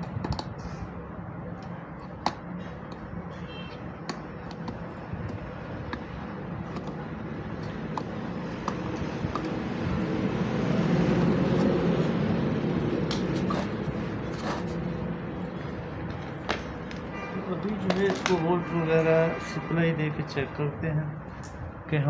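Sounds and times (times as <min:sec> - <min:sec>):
passing road vehicle rumble: 0:00.0 - 0:19.4.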